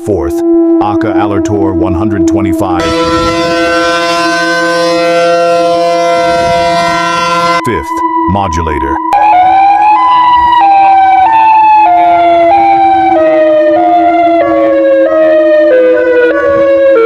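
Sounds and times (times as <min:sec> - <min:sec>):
electronic warning siren wail: 0:00.0 - 0:17.0.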